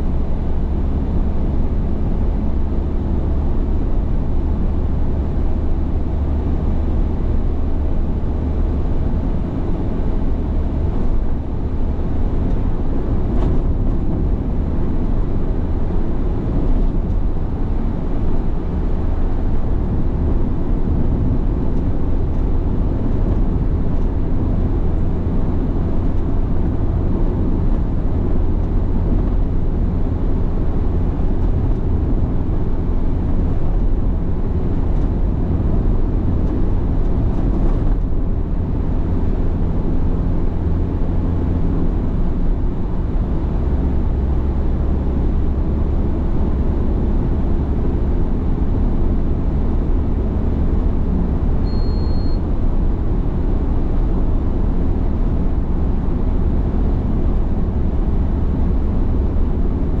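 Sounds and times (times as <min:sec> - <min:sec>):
car engine and tyres rumbling: 0:00.0 - 1:00.0
short high beep: 0:51.6 - 0:52.4.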